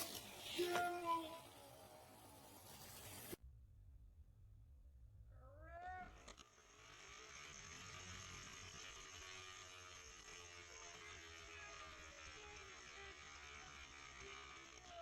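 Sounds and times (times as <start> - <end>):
faint steady hiss: 0.0 - 3.4.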